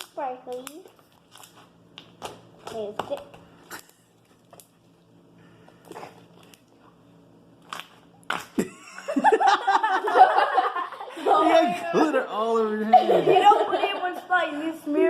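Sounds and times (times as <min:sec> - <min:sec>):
loud laughter: 0:08.6 - 0:11.4.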